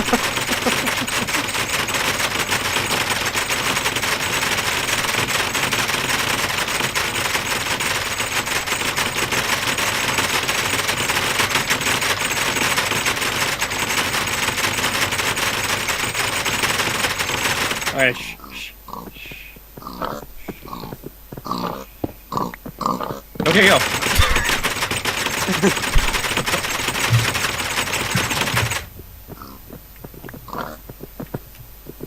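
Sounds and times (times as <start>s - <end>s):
rapid rattling clatter: 0.0s - 18.1s, 23.4s - 29.5s.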